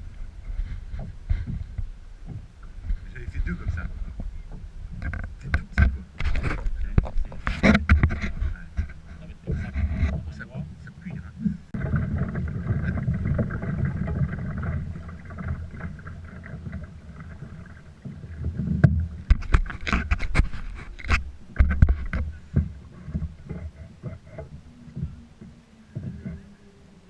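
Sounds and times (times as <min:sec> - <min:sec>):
knocks and splashes against hull: 0:00.0 - 0:26.6
low rumble: 0:08.2 - 0:19.3.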